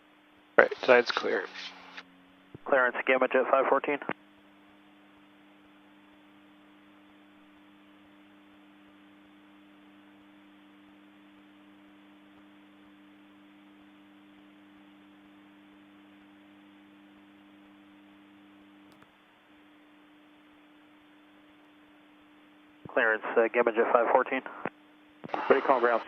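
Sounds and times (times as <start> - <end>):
faint electrical hum: 0.0 - 26.0
click: 18.8 - 19.1.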